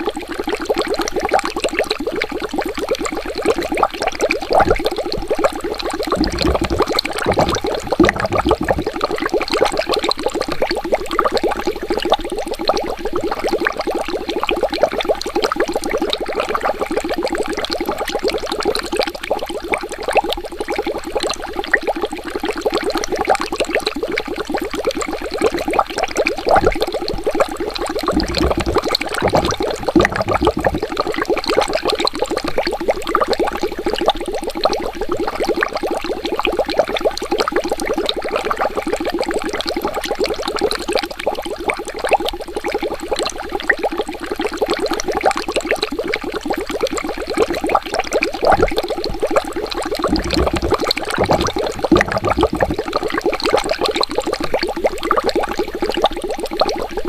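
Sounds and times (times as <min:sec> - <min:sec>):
water bubbling: 0:00.4 - 0:23.4, 0:24.0 - 0:35.8, 0:37.9 - 0:57.0
low rumble: 0:06.2 - 0:08.9, 0:28.1 - 0:30.9, 0:50.1 - 0:52.9.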